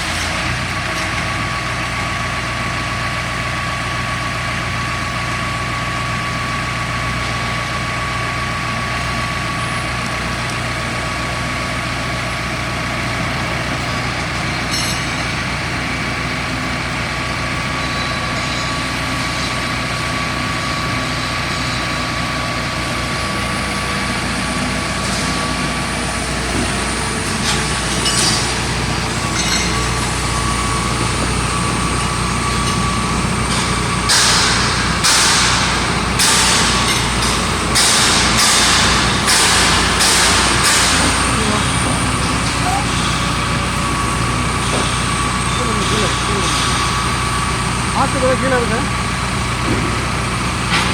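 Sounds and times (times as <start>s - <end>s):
drill rig engine and hydraulics: 0.0s - 50.9s
sharp knocks: 26.5s - 46.9s.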